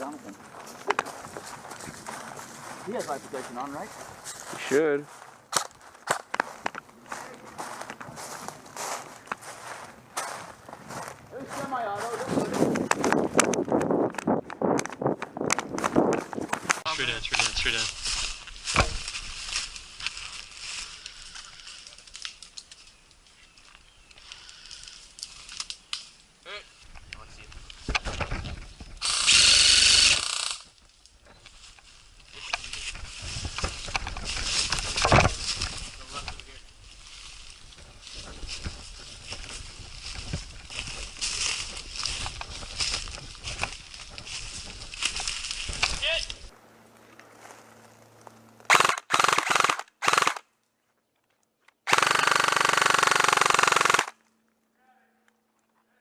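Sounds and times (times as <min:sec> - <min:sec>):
airsoft gun full-auto burst: 0:29.0 - 0:30.6, 0:48.7 - 0:50.4, 0:51.9 - 0:54.2.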